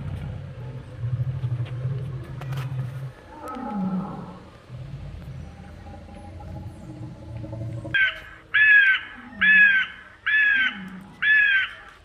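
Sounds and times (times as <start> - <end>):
low rumbling roar: 0.0 - 8.0.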